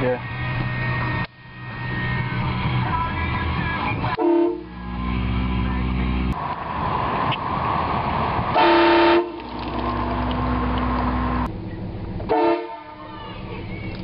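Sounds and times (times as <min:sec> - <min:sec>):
vehicle running: 0:00.0 - 0:14.0
train horn blasts: 0:04.1 - 0:04.9, 0:08.6 - 0:09.4, 0:12.3 - 0:13.1.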